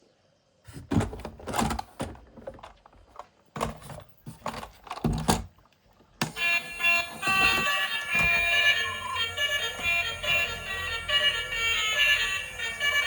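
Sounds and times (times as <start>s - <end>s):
music: 6.3s - 13.0s.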